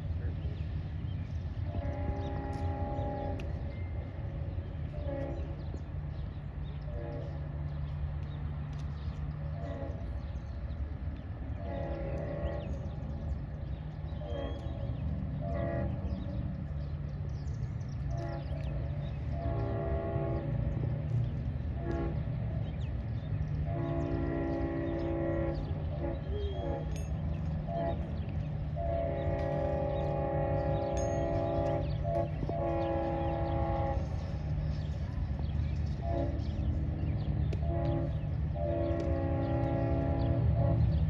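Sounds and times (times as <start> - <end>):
train rumbling past: 0.0 - 41.0
locomotive air horn blasts: 1.6 - 5.7, 6.9 - 7.4, 9.6 - 10.2, 11.6 - 12.9, 14.2 - 16.4, 18.1 - 21.0, 21.7 - 22.4, 23.6 - 35.0, 35.9 - 36.9, 37.5 - 41.0.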